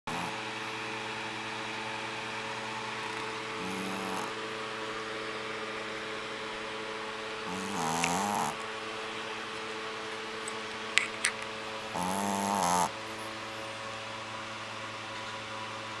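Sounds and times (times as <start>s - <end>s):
puppy snoring: 0.1s - 0.4s, 2.8s - 4.4s, 7.4s - 9.0s, 11.9s - 13.0s
steady whirring hum: 0.1s - 16.0s.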